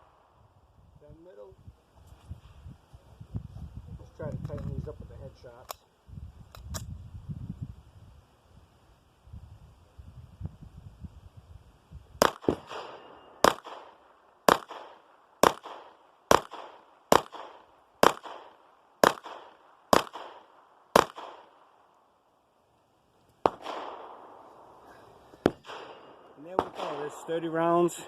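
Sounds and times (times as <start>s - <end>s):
pistol shots with echo: 12.2s - 21.8s, 23.4s - 24.8s, 25.4s - 28.0s.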